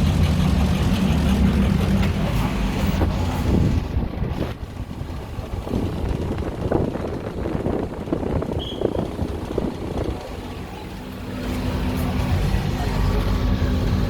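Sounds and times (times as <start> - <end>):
air conditioner unit rough low rumble: 3.4 - 14.0.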